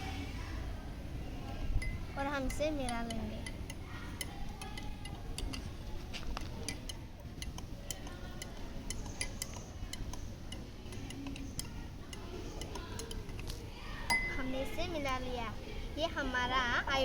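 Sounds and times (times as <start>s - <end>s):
utensil clicking against container: 2.8s - 13.6s.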